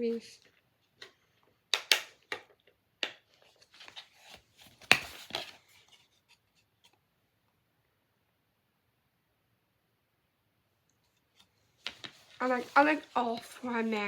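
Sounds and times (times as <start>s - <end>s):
plastic cases scraping and rubbing: 11.4s - 14.0s.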